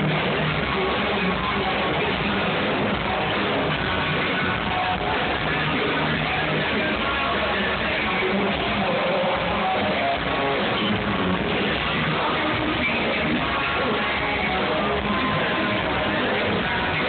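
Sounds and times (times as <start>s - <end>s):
electric guitar: 0.0s - 17.0s
rock band playing live: 0.0s - 17.0s.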